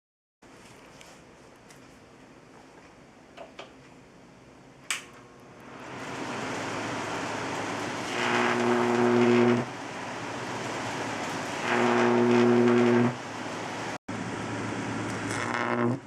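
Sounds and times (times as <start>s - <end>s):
loud electrical buzz: 5.0s - 16.0s
electric arc crackling hiss: 5.6s - 16.0s
electric arc snaps: 7.5s - 9.7s, 10.5s - 13.2s, 15.1s - 16.0s.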